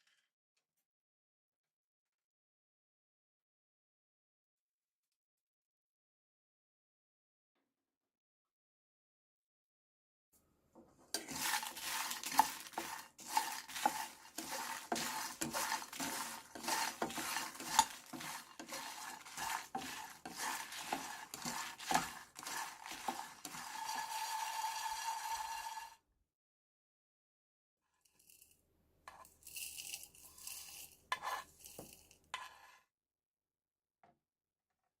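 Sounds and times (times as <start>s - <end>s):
spoon scraping in pot: 11.1s - 26.0s, 29.1s - 32.9s.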